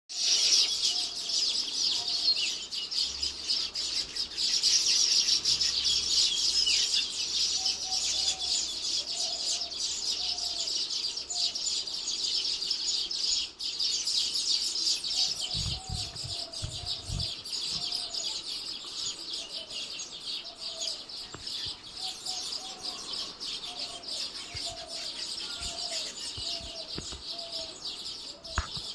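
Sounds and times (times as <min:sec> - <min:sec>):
weaver birds twittering: 0:00.1 - 0:28.9
lower bird call: 0:14.8 - 0:28.9
dull bumps: 0:15.5 - 0:17.4.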